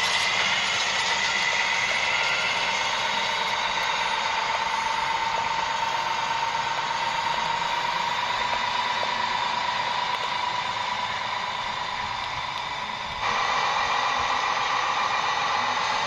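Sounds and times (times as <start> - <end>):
electric motor whining: 0.0 - 16.0.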